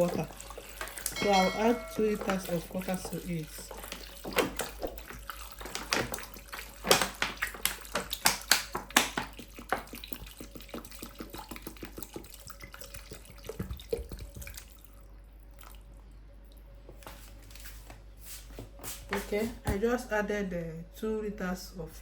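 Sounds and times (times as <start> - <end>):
water poured into a pot splashing: 0.0 - 15.7.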